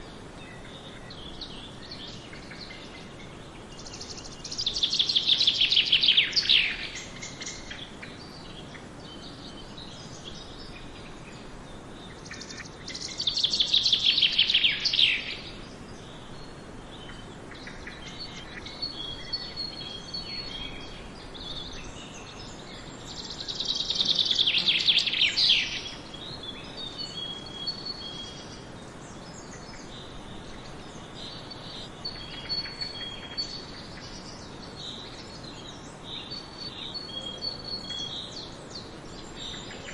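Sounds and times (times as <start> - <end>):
steady background noise: 0.0 - 39.9
faint high whistled bird calls: 12.1 - 39.9.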